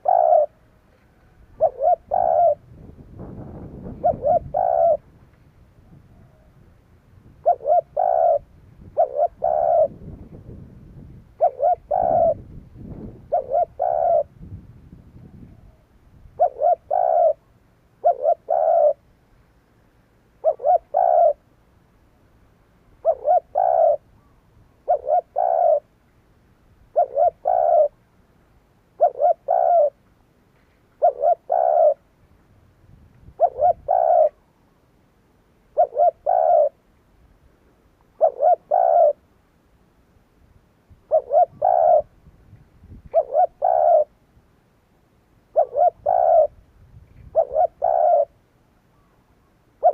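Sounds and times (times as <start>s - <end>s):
dove cooing: 0.0s - 5.2s, 5.8s - 6.7s, 7.3s - 14.6s, 15.2s - 19.1s, 20.4s - 21.5s, 23.0s - 25.9s, 26.9s - 28.0s, 29.0s - 30.0s, 31.0s - 32.1s, 33.2s - 34.5s, 35.7s - 36.8s, 38.2s - 39.2s, 41.0s - 42.2s, 43.0s - 44.2s, 45.5s - 46.6s, 47.2s - 49.9s.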